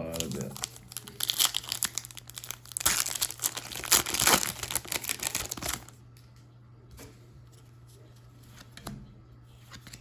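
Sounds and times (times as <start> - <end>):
foil wrapper crinkling: 0.0 - 6.0.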